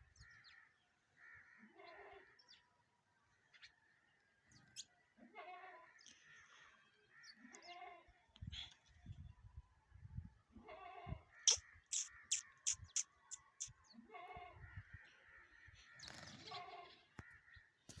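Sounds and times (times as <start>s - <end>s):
birds cawing: 0.2s - 2.6s, 11.3s - 17.7s
high bird chirps: 11.4s - 13.8s.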